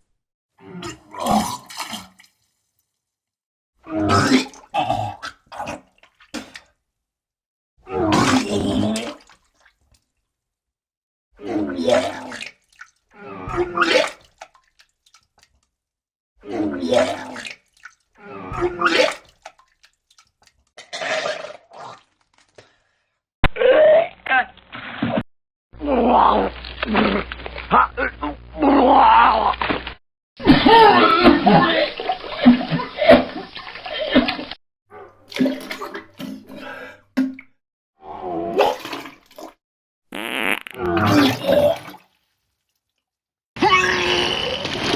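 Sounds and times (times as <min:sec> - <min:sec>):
person retching and vomiting: 0:00.9 - 0:02.2, 0:04.1 - 0:05.4, 0:20.8 - 0:22.0, 0:40.2 - 0:42.1, 0:43.6 - 0:44.9
liquid splashing into water: 0:17.0 - 0:22.8, 0:35.2 - 0:36.5, 0:40.4 - 0:42.2
person retching: 0:40.1 - 0:42.0, 0:43.7 - 0:44.9.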